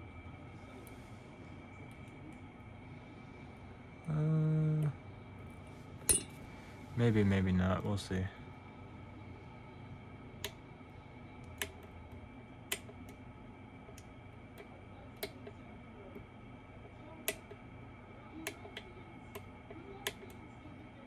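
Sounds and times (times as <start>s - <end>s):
lock pick clicking: 6.1s - 6.4s.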